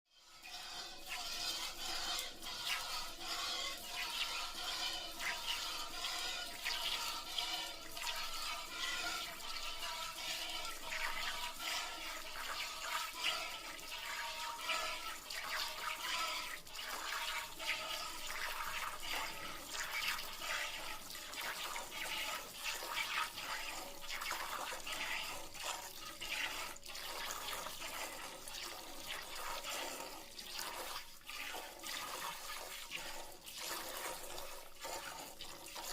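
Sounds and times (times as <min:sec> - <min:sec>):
milk squirting into a pail: 0:00.5 - 0:20.8.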